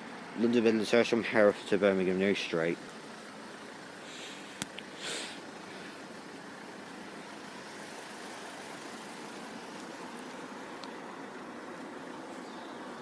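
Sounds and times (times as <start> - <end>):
road traffic hum: 0.0 - 13.0.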